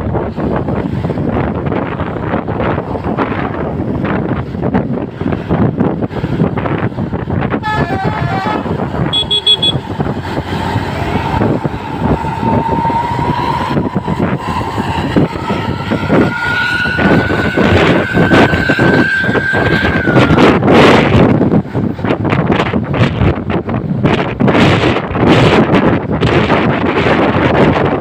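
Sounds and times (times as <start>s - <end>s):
traffic noise: 0.0s - 28.0s
wind buffeting microphone: 0.0s - 28.0s
multi-tone bus horn: 7.5s - 10.0s, 12.2s - 20.5s.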